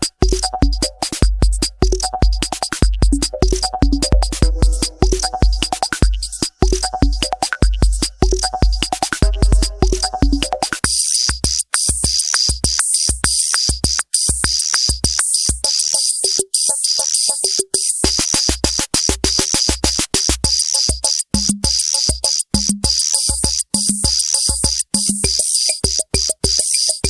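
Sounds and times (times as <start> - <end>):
drum machine beat: 0.0 - 27.0.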